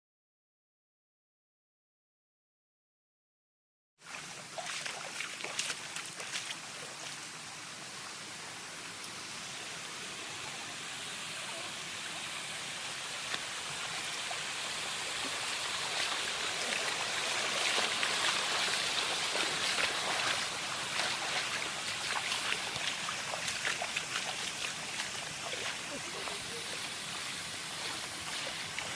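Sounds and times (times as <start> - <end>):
stream running over rocks: 4.0 - 28.9
small water splashes: 4.1 - 7.3, 13.2 - 28.9.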